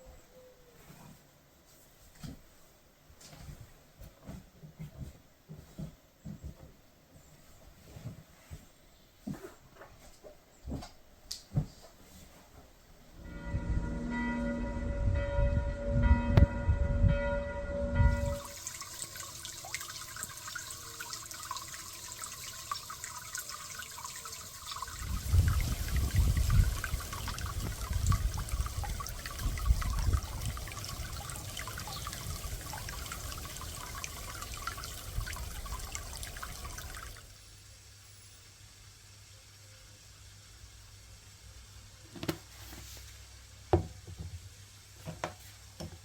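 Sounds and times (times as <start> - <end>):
ringing bell-like tone: 13.2 - 18.6
water trickling and splashing: 18.0 - 37.5.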